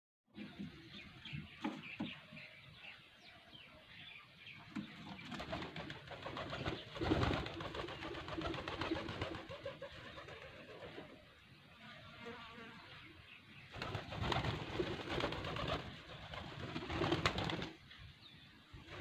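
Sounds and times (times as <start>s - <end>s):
small birds chirping: 0.3s - 19.0s
pigeons cooing: 5.4s - 11.2s.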